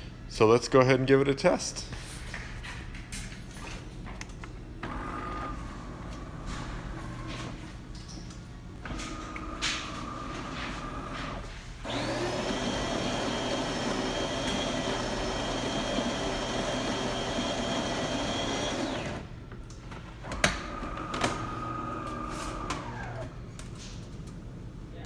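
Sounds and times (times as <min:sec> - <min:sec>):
coffee grinder whining: 0:09.2 - 0:19.3.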